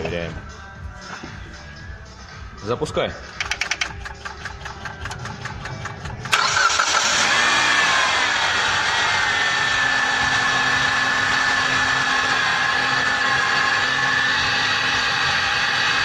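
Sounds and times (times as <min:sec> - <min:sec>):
car engine idling: 0:00.0 - 0:16.0
car starter cranking: 0:03.3 - 0:09.0.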